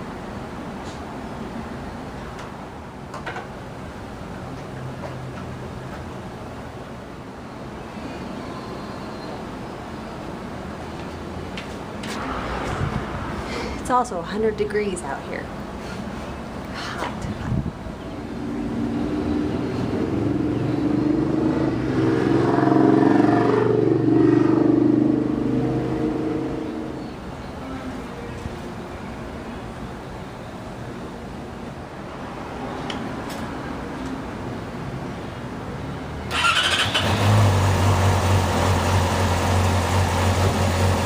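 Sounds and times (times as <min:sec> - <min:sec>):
motor vehicle engine running: 0:36.3 - 0:41.0.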